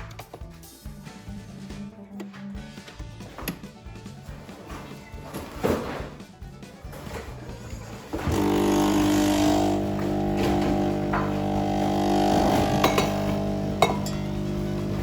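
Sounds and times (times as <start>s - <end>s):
coffee machine pump buzzing: 8.2s - 15.0s.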